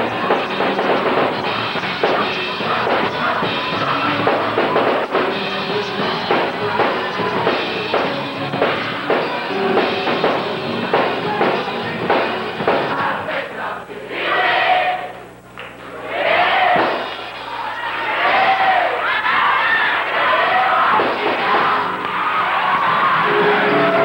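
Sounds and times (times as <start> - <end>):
drum kit steady beat: 0.0 - 13.7, 16.6 - 17.4, 20.9 - 24.0
sustained pitched instruments: 0.0 - 13.7.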